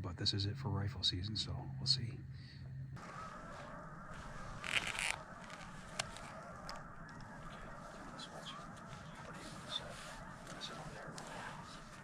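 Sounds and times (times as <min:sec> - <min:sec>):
geese honking faintly: 0:03.0 - 0:12.0.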